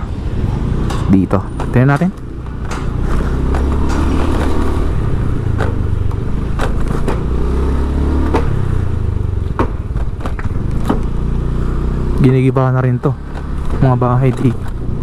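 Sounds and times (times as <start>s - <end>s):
vehicle engine humming: 0.0s - 15.0s
sharp clicks or knocks: 0.8s - 12.2s, 13.2s - 15.0s.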